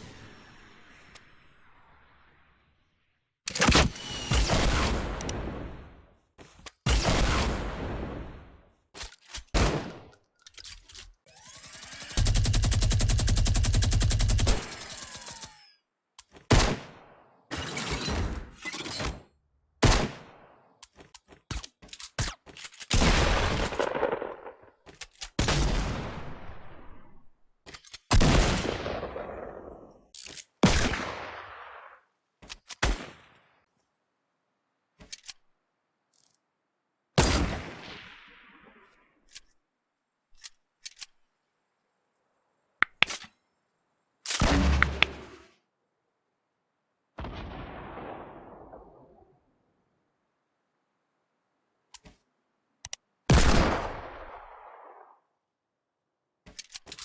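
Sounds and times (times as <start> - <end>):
automatic gunfire burst: 11.3 - 15.7
single gunshots with echoes: 22.9 - 24.8, 44.4 - 45.5, 47.2 - 49.4, 53.3 - 55.2.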